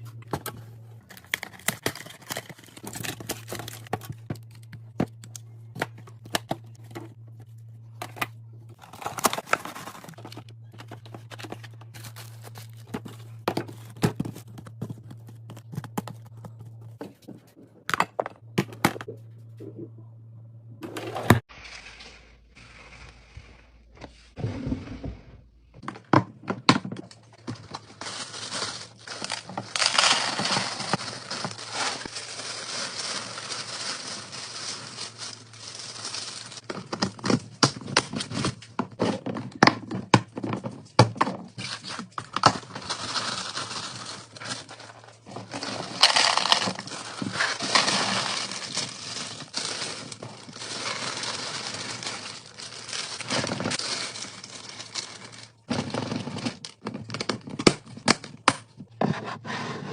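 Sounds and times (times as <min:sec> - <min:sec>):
plastic packaging crinkling: 0:01.0 - 0:07.5, 0:08.1 - 0:16.7, 0:27.1 - 0:38.6, 0:41.6 - 0:57.6.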